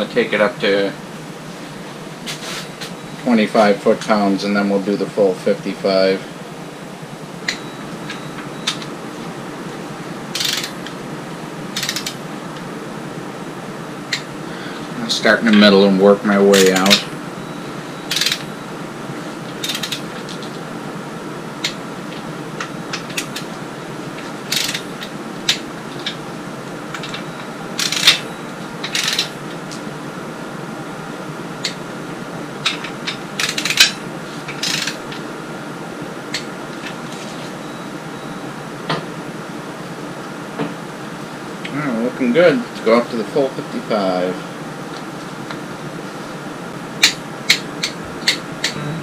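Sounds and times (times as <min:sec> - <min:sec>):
steady low hum: 0:00.0 - 0:49.0
wrench ratcheting: 0:10.3 - 0:10.8, 0:11.8 - 0:12.2, 0:18.1 - 0:18.4, 0:19.6 - 0:20.0, 0:24.5 - 0:24.9, 0:27.8 - 0:28.2, 0:28.8 - 0:29.3, 0:33.4 - 0:35.0.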